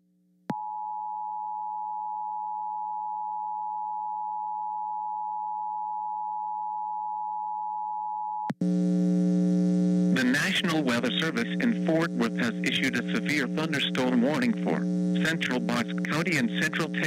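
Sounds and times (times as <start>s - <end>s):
faint low hum: 8.6s - 17.0s.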